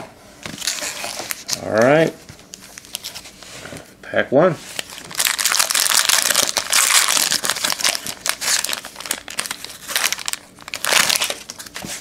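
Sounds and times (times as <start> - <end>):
foil wrapper tearing and crinkling: 4.8 - 12.0.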